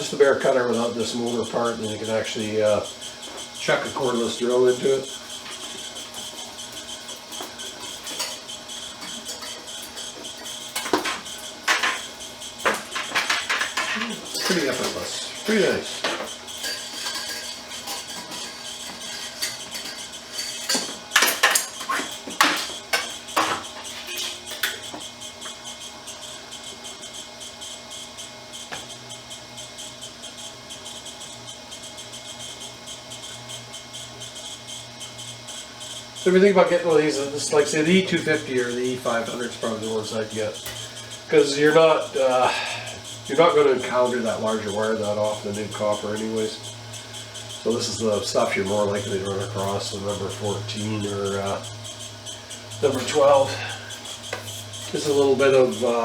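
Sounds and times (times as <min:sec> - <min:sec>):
crickets chirping: 0:00.0 - 0:56.0
wire stripper motor whining: 0:00.0 - 0:56.0
sharp metallic clinks: 0:12.9 - 0:22.0.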